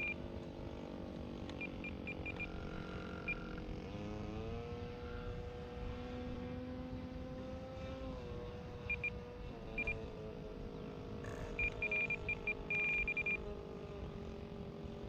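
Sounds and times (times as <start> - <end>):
model plane engine running: 7.0 - 15.0
short high beeps: 11.6 - 13.4.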